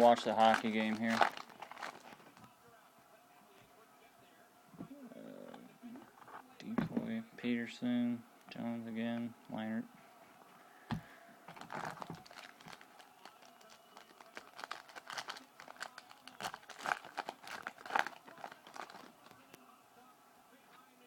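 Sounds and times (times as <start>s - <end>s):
wrapper crinkling: 0.0s - 2.4s, 11.5s - 19.4s
cards being handled: 0.0s - 2.5s, 11.5s - 19.5s.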